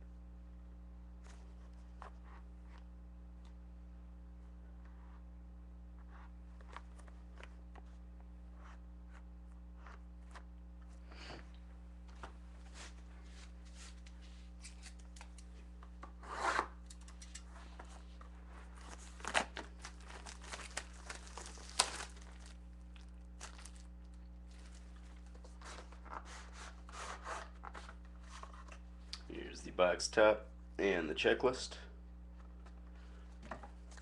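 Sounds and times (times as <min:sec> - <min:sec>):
plastic wrap tearing and crinkling: 0:18.8 - 0:26.2.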